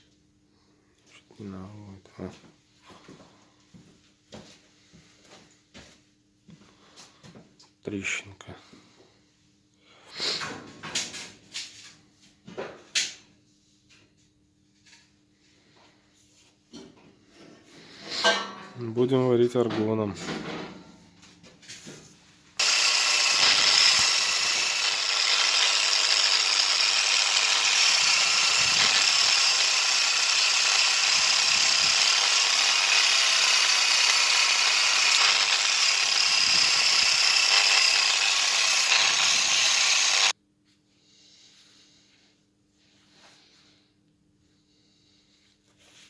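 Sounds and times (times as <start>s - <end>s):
welding arc hissing: 22.6s - 40.3s.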